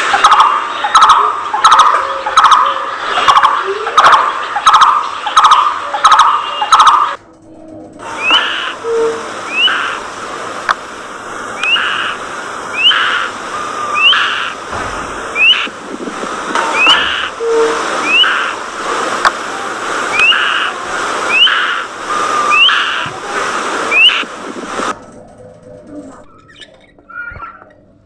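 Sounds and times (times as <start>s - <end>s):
budgerigars chattering and warbling: 0.0s - 7.2s, 8.1s - 10.0s, 11.6s - 14.6s, 15.3s - 15.8s, 16.7s - 17.4s, 18.0s - 18.7s, 20.1s - 23.1s, 23.9s - 24.3s
upward-sliding whistles: 8.0s - 10.0s, 11.6s - 11.9s, 12.7s - 14.4s, 15.4s - 15.7s, 16.7s - 18.5s, 21.3s - 23.1s, 23.9s - 24.3s.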